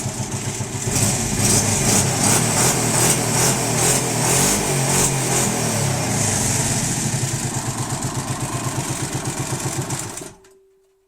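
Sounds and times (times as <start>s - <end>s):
atv engine pulsing idle: 0.0s - 2.5s, 6.0s - 10.4s.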